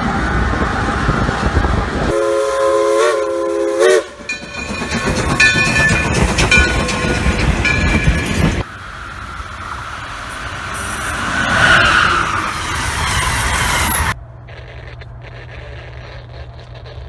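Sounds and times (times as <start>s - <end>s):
train rumbling and clattering: 0.0s - 14.2s
locomotive air horn chord: 2.1s - 4.4s
high tones: 4.0s - 8.7s.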